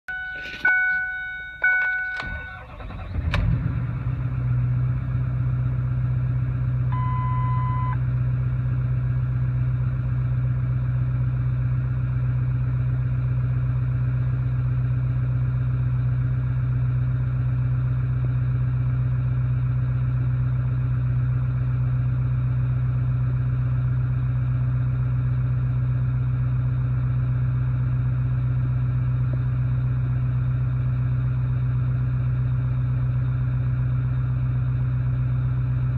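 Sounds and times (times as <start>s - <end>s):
short dash beep: 0.1s - 2.9s, 6.9s - 8.0s
diesel engine idling: 0.1s - 35.9s
diesel engine cranking: 0.2s - 6.2s.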